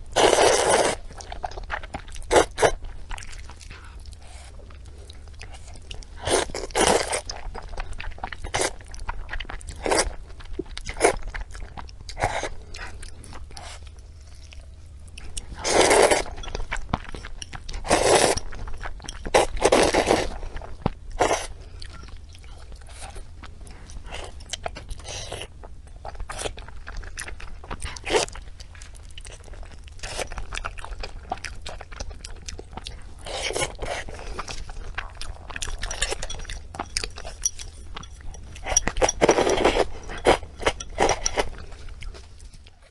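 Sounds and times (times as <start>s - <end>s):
close chewing and biting: 0.0s - 42.9s
faint low hum: 0.0s - 42.9s.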